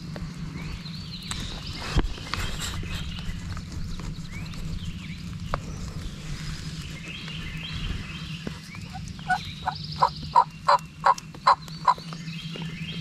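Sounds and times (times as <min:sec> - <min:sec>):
faint songbird chirps: 0:00.0 - 0:13.0
steady low drone: 0:00.0 - 0:13.0.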